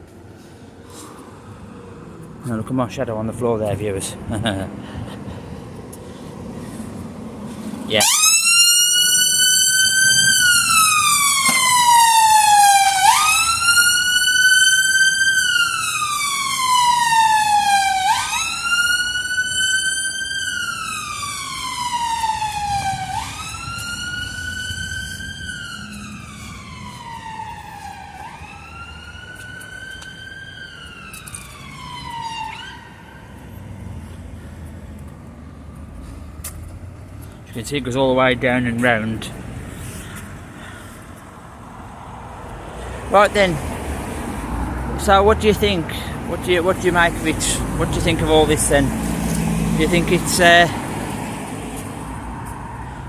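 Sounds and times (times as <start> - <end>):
emergency siren wailing: 7.8 - 36.0, 43.2 - 53.0.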